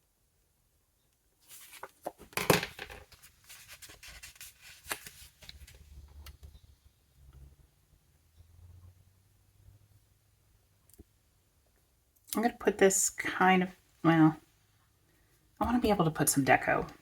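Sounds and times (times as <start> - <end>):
papery rips and rustles: 3.2 - 5.8.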